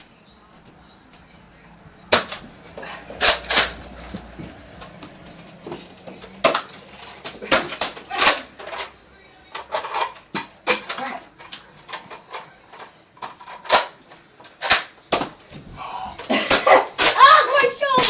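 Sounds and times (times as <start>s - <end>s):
toy blaster plastic clacks and pops: 3.2s - 4.2s, 6.2s - 15.4s.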